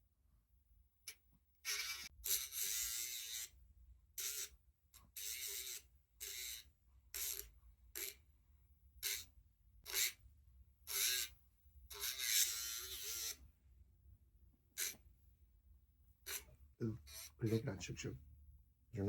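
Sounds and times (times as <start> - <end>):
nail grinder grinding: 1.7 - 3.5, 4.2 - 8.2, 9.9 - 10.2, 10.9 - 11.3, 11.9 - 13.4, 14.8 - 15.0, 16.3 - 17.7.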